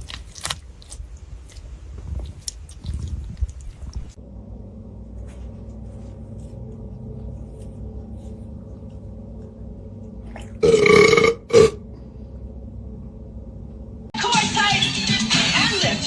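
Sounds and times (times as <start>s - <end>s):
low steady hum: 0.0s - 14.2s.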